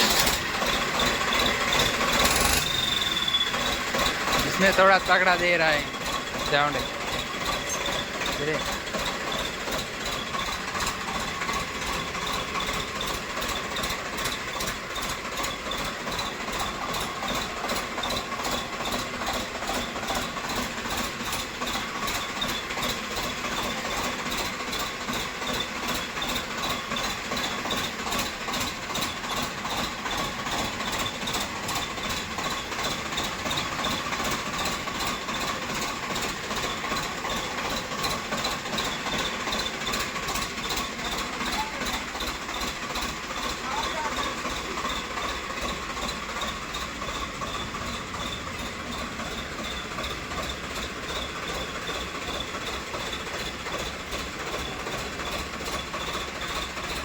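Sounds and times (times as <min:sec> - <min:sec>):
tractor diesel engine idling: 0:00.0 - 0:57.0
turbo whistle tone: 0:02.4 - 0:03.8.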